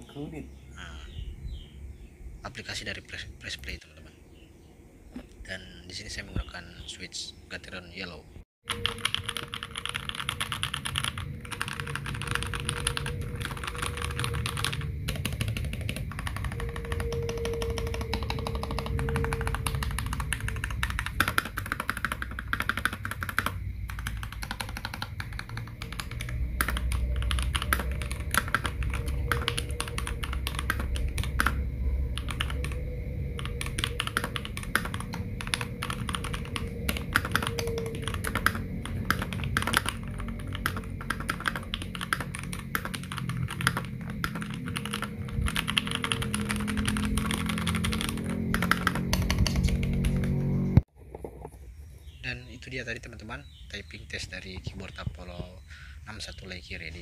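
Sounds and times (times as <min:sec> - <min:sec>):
mechanical keyboard typing: 0:08.7 - 0:50.4.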